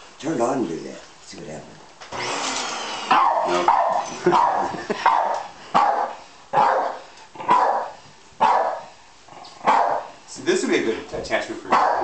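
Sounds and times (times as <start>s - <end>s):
vacuum cleaner running: 2.1s - 4.8s
dog barking: 3.1s - 8.9s, 9.6s - 10.2s, 11.7s - 12.0s.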